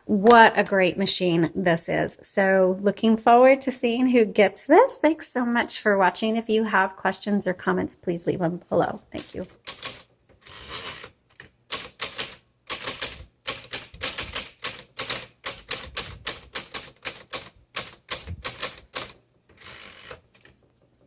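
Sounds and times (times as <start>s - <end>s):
typewriter keystroke clacks: 9.2s - 10.1s, 11.7s - 20.5s
typewriter rasping: 9.2s - 20.4s.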